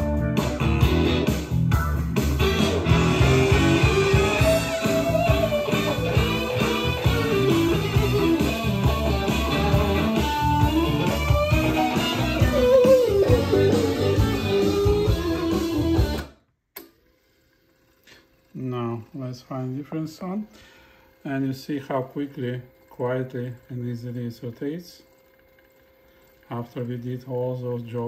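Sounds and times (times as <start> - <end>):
guitar music: 0.0 - 16.3.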